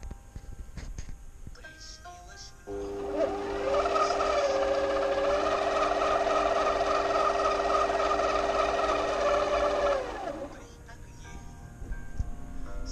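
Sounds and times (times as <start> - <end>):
trim router motor whine: 2.7 - 10.7.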